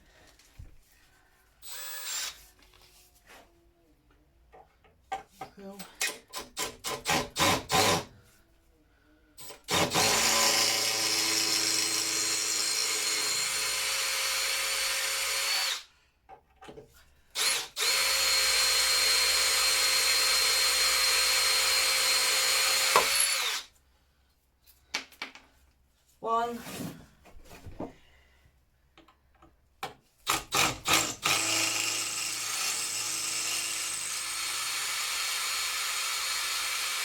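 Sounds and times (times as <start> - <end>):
power drill whining: 1.6 - 2.4, 6.6 - 8.1, 9.4 - 15.9, 17.4 - 23.7, 30.3 - 37.0.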